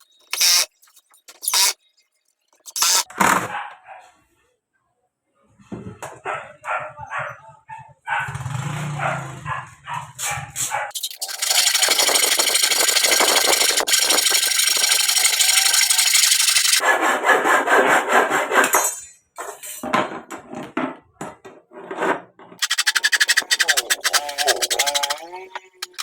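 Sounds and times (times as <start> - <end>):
saw cutting through wood: 0.0 - 1.8, 2.6 - 3.1, 10.9 - 18.6, 22.6 - 26.0.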